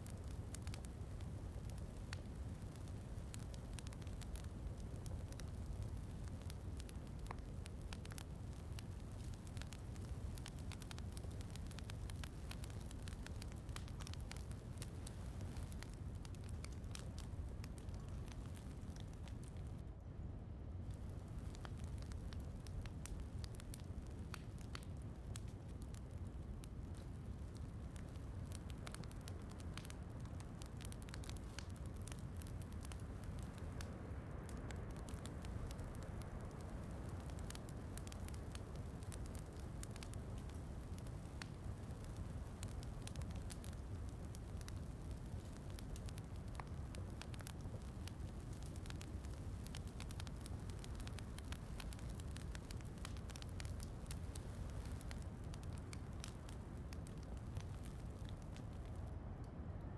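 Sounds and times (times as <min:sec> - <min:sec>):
wood fire crackling: 0:00.0 - 0:59.9.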